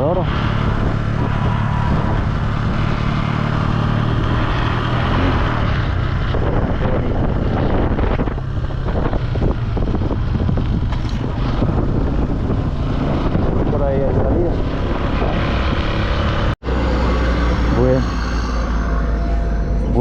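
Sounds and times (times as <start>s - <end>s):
wind buffeting microphone: 0.0s - 16.6s
motorcycle engine running: 0.0s - 16.8s.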